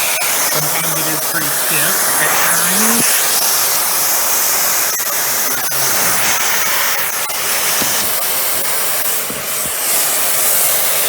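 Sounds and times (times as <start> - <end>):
vacuum cleaner running: 0.0 - 11.0
plastic clicks and knocks: 7.7 - 10.0.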